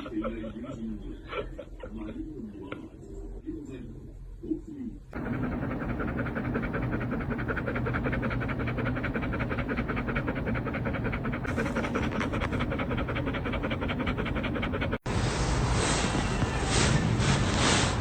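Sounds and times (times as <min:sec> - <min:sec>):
dog panting rapidly: 0:05.2 - 0:15.2.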